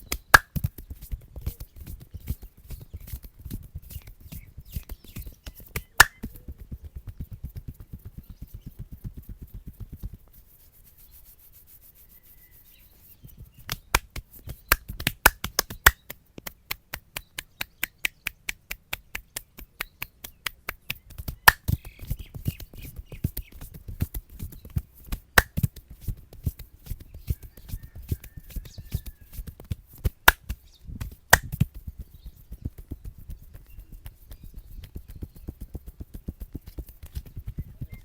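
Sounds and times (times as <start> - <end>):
crisp clicking slaps: 0.0 - 0.9, 4.8 - 6.5, 13.6 - 22.8, 25.0 - 25.8, 29.6 - 31.8
hands tapping on head: 0.0 - 11.4, 13.2 - 38.0.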